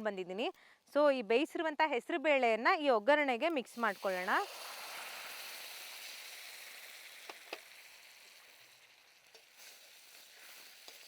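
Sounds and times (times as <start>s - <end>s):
hot oil sizzling: 3.6s - 11.0s.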